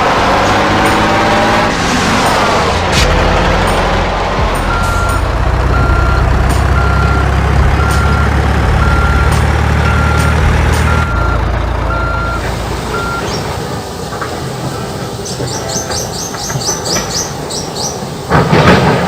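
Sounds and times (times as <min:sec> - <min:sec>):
diesel engine rumble: 0:00.0 - 0:19.0
reversing alarm beeping: 0:04.6 - 0:13.4.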